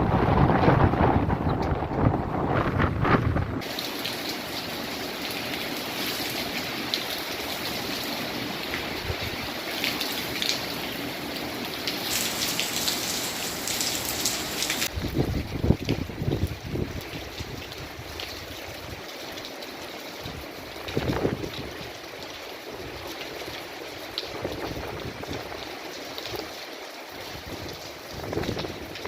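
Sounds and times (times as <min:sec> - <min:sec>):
wind buffeting microphone: 0:00.0 - 0:03.6, 0:13.7 - 0:18.2, 0:20.3 - 0:21.8, 0:24.3 - 0:25.6, 0:27.3 - 0:29.0
heavy rain falling: 0:00.0 - 0:29.0.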